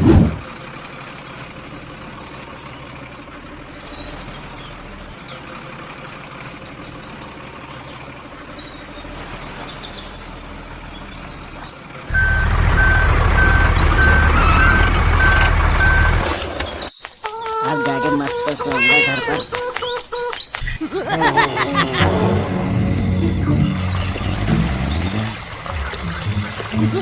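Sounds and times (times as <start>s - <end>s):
loud vehicle engine: 0.0s - 16.9s, 20.8s - 27.0s
outdoor ambience: 0.0s - 27.0s
reversing beeper: 12.1s - 16.6s, 21.1s - 27.0s
faint bird chirps: 22.6s - 27.0s.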